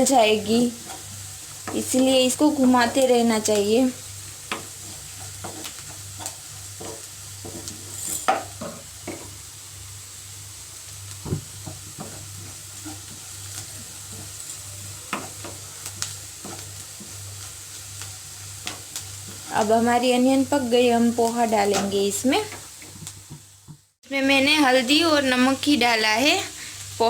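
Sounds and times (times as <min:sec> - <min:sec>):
onions sizzling in a pan: 0:00.0 - 0:27.0
spoon scraping a pan: 0:00.8 - 0:01.8, 0:04.4 - 0:09.4, 0:11.6 - 0:17.5.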